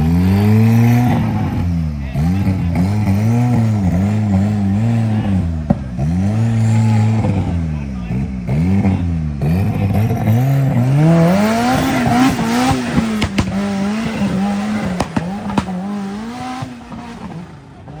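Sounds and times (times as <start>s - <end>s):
off-road engine revving: 0.0s - 18.0s
sharp knocks: 13.0s - 13.7s, 14.8s - 15.8s.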